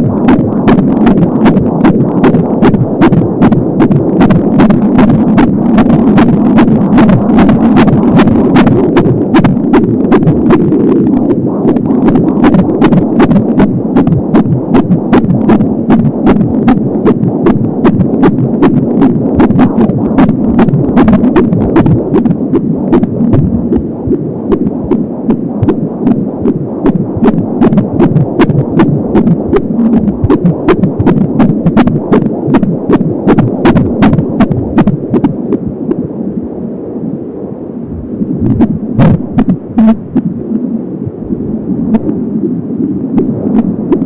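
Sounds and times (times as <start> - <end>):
fetal heartbeat pulsing: 0.0 - 36.0, 38.0 - 44.0
steady hum: 0.0 - 44.0
sharp clicks: 26.8 - 35.4.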